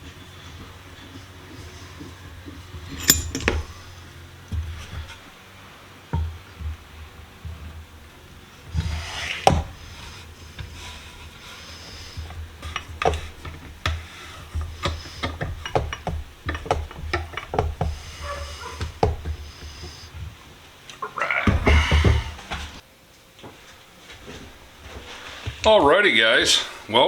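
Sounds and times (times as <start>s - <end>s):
metal parts knocking and clicking: 2.7s - 3.9s, 12.0s - 19.9s.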